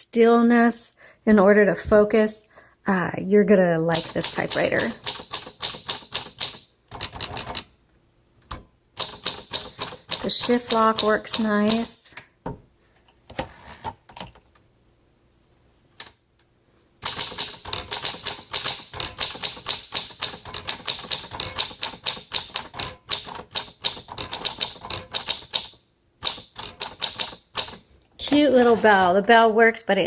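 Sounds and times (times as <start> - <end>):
typewriter keys striking: 3.9 - 7.7, 9.0 - 11.9, 17.0 - 27.8
typewriter bell ding: 26.3 - 27.2.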